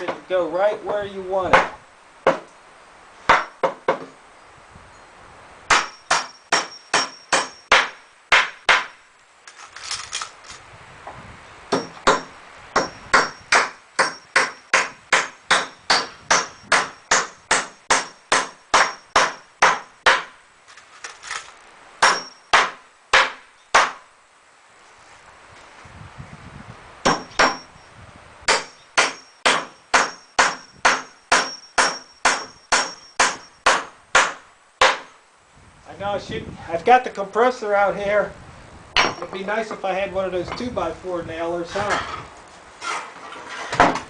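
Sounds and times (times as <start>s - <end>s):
hammer blows on wooden boards: 0.0s - 2.5s, 3.2s - 4.2s, 5.7s - 9.0s, 11.7s - 20.4s, 22.0s - 24.1s, 27.0s - 27.7s, 28.5s - 35.2s, 39.0s - 39.5s, 43.7s - 44.0s.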